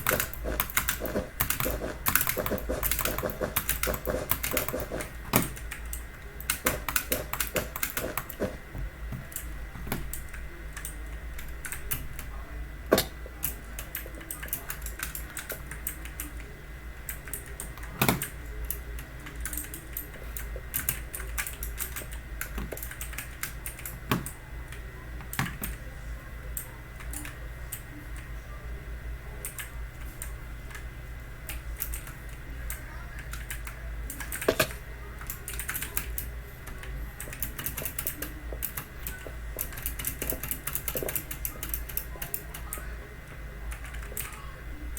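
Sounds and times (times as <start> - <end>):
clicky keyboard typing: 0.0 - 8.5, 31.5 - 42.8, 43.7 - 44.4.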